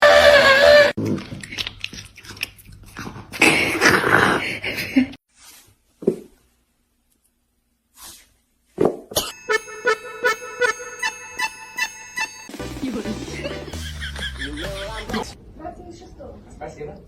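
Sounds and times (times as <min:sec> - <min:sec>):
chewing and crunching: 0:01.0 - 0:03.4.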